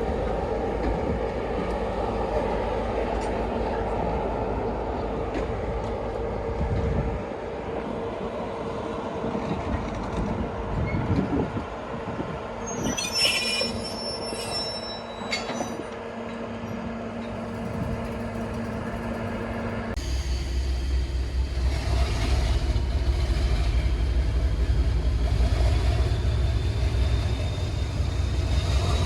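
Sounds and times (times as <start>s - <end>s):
train rumbling on rails: 0.0s - 29.0s
high metallic squeal: 12.6s - 16.0s.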